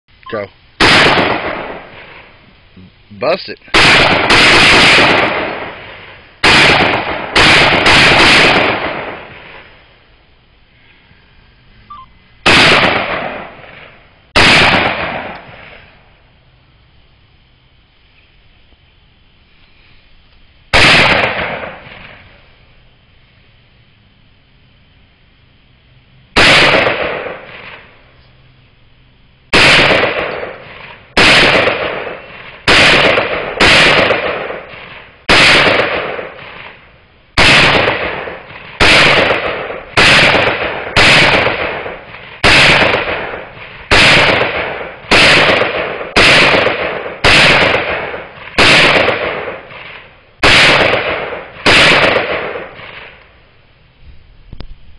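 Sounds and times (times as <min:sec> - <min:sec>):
gunshots with echoing tail: 0:00.8 - 0:02.3, 0:03.7 - 0:09.8, 0:11.9 - 0:15.8, 0:20.7 - 0:22.4, 0:26.4 - 0:27.9, 0:29.5 - 0:36.8, 0:37.4 - 0:53.2.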